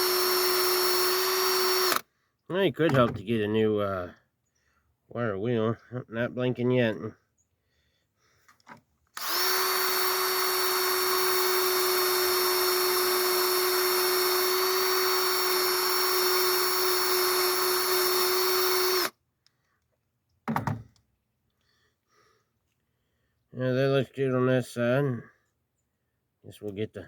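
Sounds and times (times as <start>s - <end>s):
drill wire wheel brushing metal: 0.0s - 2.0s, 9.2s - 19.1s.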